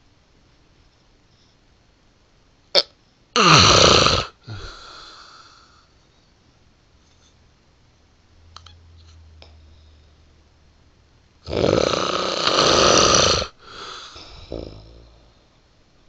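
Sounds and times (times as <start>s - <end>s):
person snoring: 3.4s - 5.8s, 11.4s - 15.5s
soft breath: 4.4s - 6.4s, 13.5s - 15.6s.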